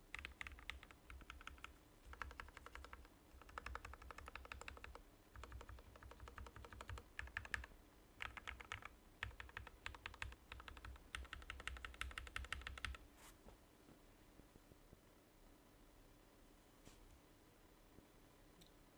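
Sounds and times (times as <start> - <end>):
mechanical keyboard typing: 0.0 - 13.0.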